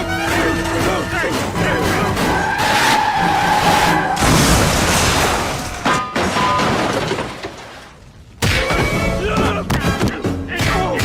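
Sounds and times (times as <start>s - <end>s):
tire screech: 0.0s - 5.8s.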